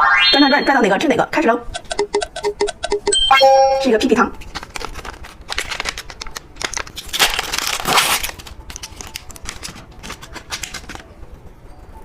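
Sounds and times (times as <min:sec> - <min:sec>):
plastic candy wrapper crinkling: 0:04.4 - 0:11.1.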